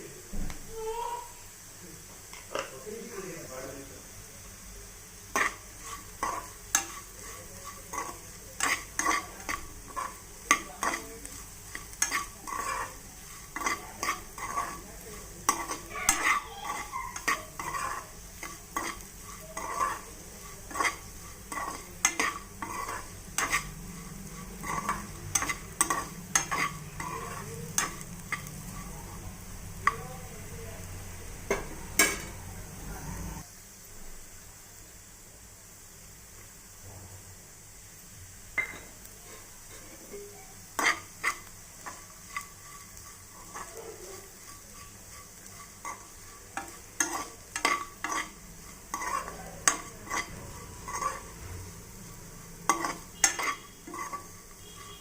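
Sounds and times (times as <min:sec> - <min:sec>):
hot oil sizzling: 0:00.0 - 0:55.0
spatula scraping frying pan: 0:05.2 - 0:30.3, 0:38.5 - 0:55.0.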